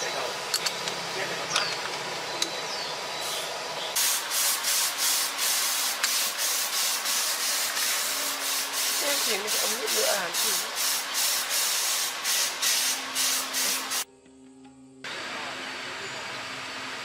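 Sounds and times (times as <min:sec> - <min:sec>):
rhythmic rubbing strokes: 0:04.0 - 0:14.1.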